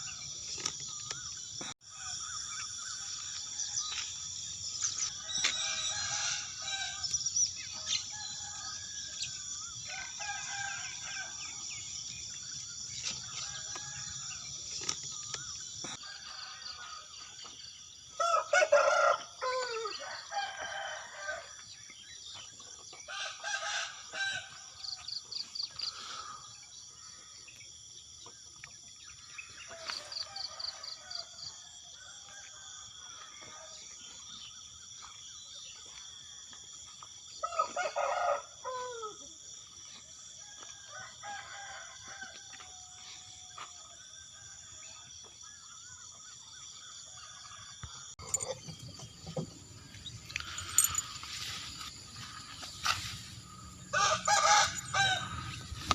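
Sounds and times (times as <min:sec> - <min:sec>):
roosters crowing: 0:05.0 - 0:11.7, 0:18.1 - 0:21.5, 0:23.0 - 0:24.9, 0:37.4 - 0:39.2, 0:40.4 - 0:43.0, 0:48.2 - 0:55.9.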